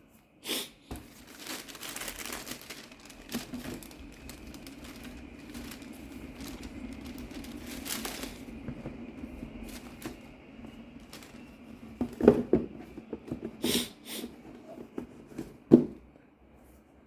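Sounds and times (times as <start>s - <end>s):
shoebox knocks and rustles: 11.9s - 13.6s, 14.6s - 16.1s.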